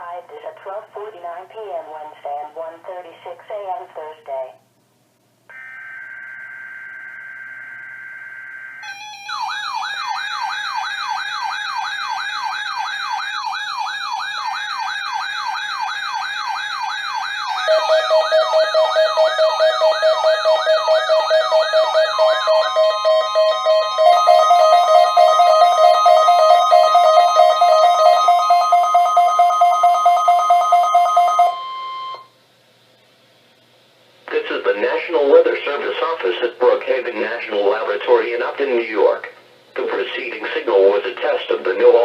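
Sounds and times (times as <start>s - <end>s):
fast warbling siren alarm: 5.5s - 32.3s
steady alarm tone: 5.5s - 32.4s.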